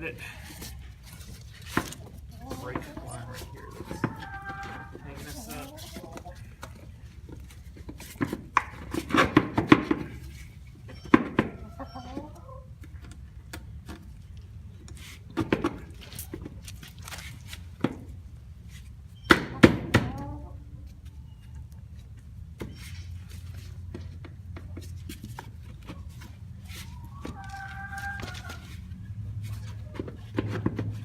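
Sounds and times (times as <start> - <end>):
chicken clucking: 2.0 - 7.0, 10.8 - 13.1, 19.5 - 22.0, 25.8 - 28.7.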